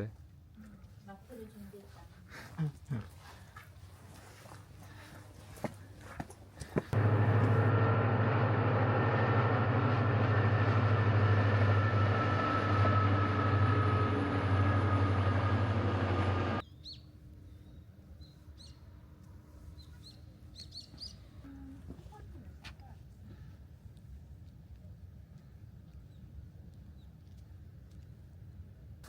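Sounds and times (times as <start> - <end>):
train rumbling on rails: 6.9 - 16.6.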